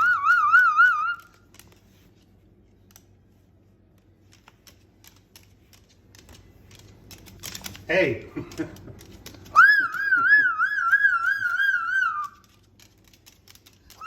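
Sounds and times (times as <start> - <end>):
warbling whistle: 0.0 - 1.4, 9.6 - 12.5
faint clicks and taps: 1.1 - 14.0.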